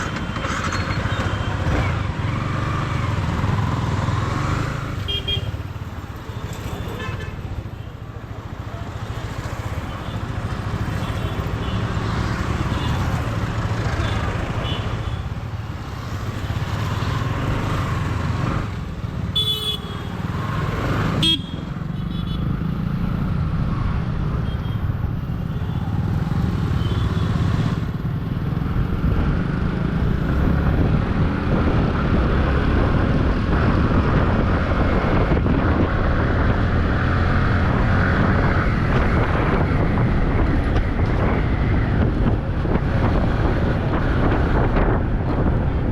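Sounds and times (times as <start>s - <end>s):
vehicle horn tooting: 19.4s - 20.0s, 21.2s - 22.4s
wind noise on microphone: 27.8s - 45.9s.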